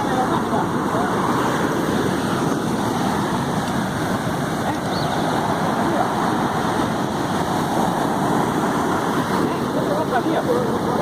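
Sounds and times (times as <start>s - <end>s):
ocean surf rushing: 0.0s - 11.0s
wind: 0.0s - 11.0s.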